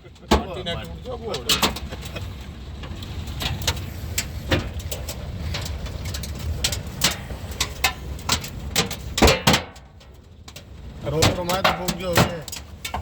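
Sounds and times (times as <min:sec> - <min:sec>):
steady low rumble: 0:00.0 - 0:13.0
hailstones knocking on car: 0:04.4 - 0:13.0.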